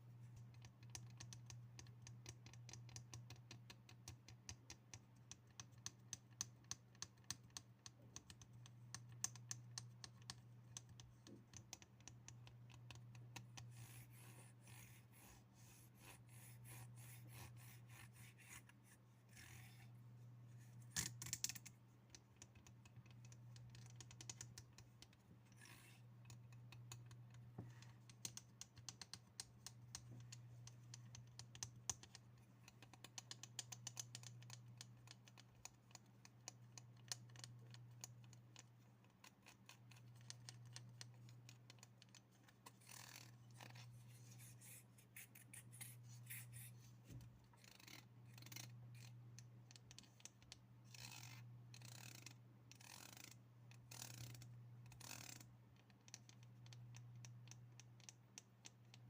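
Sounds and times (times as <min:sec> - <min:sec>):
steady low hum: 0:08.2 - 0:32.7.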